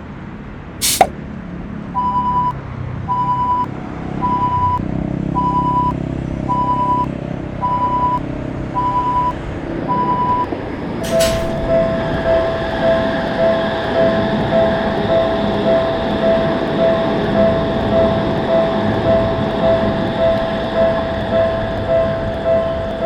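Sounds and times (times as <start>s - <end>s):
sharp click: 0.8s - 1.1s.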